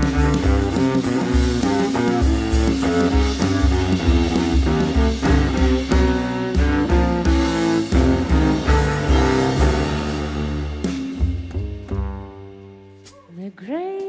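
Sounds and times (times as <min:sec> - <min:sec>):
plucked string notes: 0:07.9 - 0:13.2.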